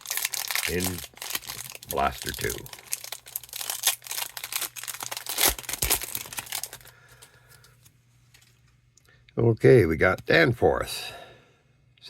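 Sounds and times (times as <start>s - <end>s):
foil wrapper tearing and crinkling: 0.0s - 6.9s.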